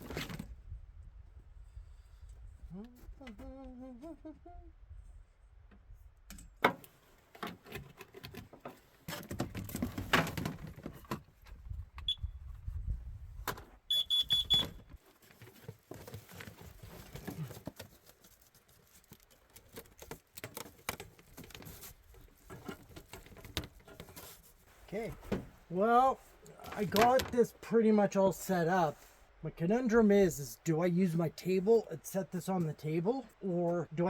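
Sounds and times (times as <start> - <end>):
gear knocks and rattles: 6.7 - 11.9, 14.9 - 25.7
short electronic beep: 13.9 - 14.7.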